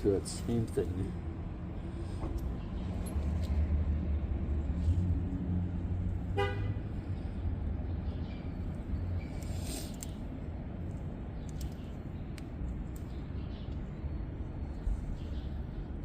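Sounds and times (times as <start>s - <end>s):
steady low rumble: 0.0s - 16.0s
car horn toot: 6.4s - 6.8s.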